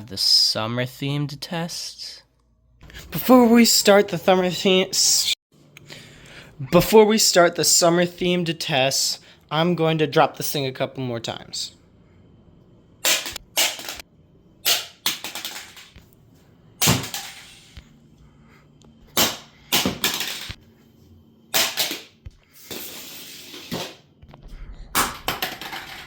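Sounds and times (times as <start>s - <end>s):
plastic adapter clattering on floor: 14.7s - 16.0s, 19.7s - 20.6s, 25.0s - 26.0s.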